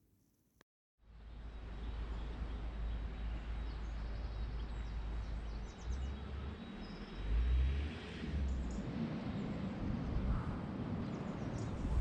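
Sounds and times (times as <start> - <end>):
wind rumbling on microphone: 8.7 - 12.0.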